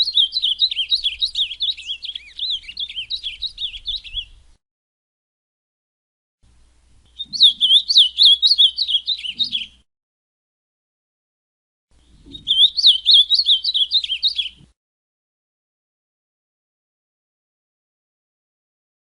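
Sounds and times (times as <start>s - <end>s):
bird singing warbled notes: 0.0s - 4.4s, 7.1s - 9.8s, 12.0s - 14.6s.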